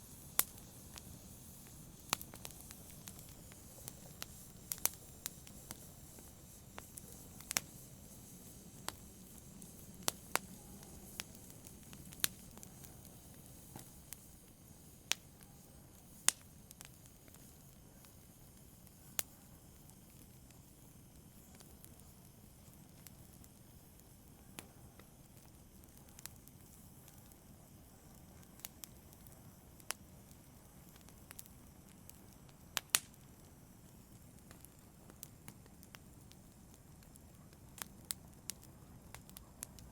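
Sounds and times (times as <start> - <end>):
flames rushing: 0.0 - 15.2
burning logs popping: 0.0 - 15.4, 16.0 - 39.9.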